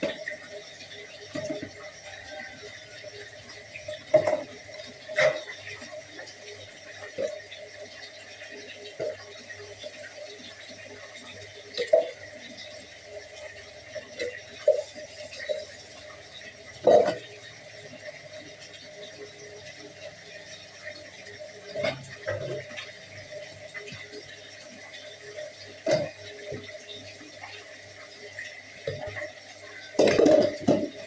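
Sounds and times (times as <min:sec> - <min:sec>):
dishes knocking and clinking: 0:29.9 - 0:31.0.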